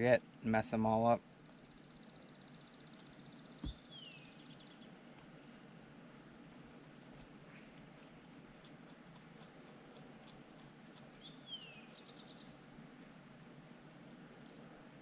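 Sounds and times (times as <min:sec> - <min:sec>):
small bird call: 0:01.2 - 0:04.9, 0:07.2 - 0:12.6.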